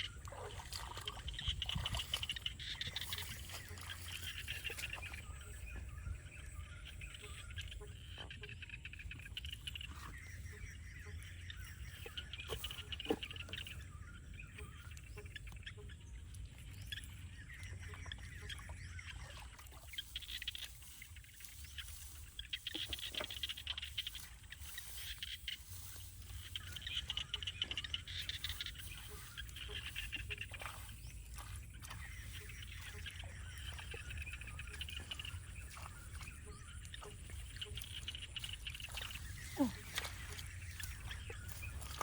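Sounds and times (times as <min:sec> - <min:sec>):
small animals chirping and trilling: 0:00.0 - 0:42.0.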